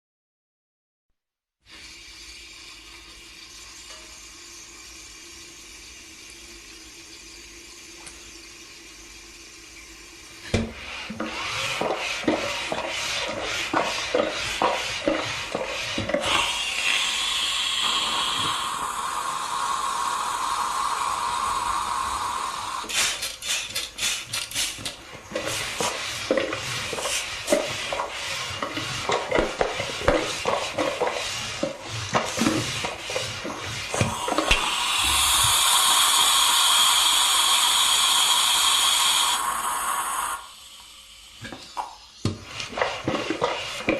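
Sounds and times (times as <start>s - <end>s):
steam hissing: 10.4s - 43.9s.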